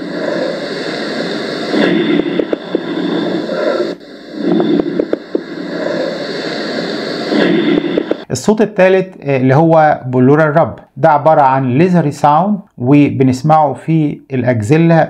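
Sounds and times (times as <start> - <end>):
breathing through stethoscope: 0.0 - 8.3
lung crackles: 0.0 - 8.4.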